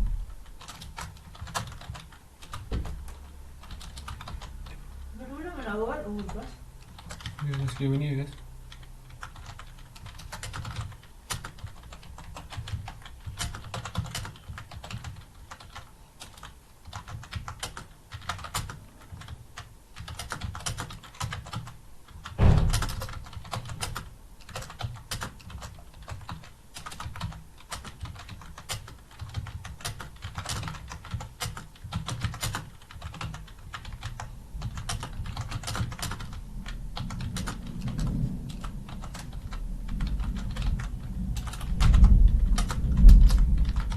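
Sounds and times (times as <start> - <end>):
fast keyboard typing: 0.0 - 43.9
loud thump: 22.4 - 23.0.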